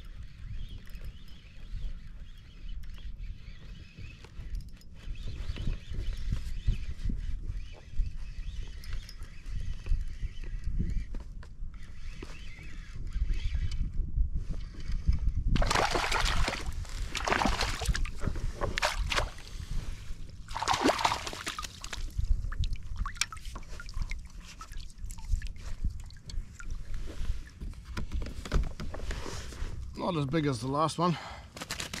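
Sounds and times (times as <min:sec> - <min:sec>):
water splashing and sloshing: 0:15.6 - 0:28.2.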